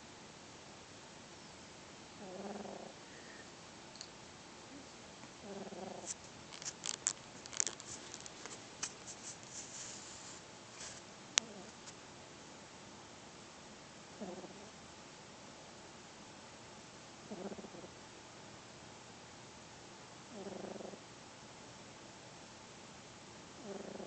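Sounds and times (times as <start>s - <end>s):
kitten snoring: 2.2s - 3.4s, 5.4s - 8.1s, 11.4s - 11.8s, 14.2s - 14.7s, 17.2s - 18.0s, 20.3s - 21.0s, 23.6s - 24.0s
rustling: 5.6s - 12.0s.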